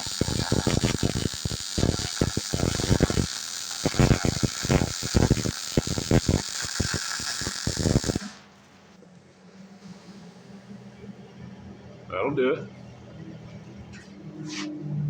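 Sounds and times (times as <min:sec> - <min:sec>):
welding arc crackling and hissing: 0:00.0 - 0:08.5.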